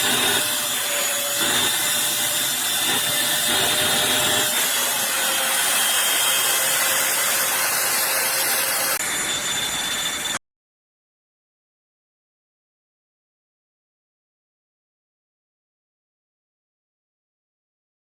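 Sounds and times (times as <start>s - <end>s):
stick vacuum running: 0.0s - 10.4s.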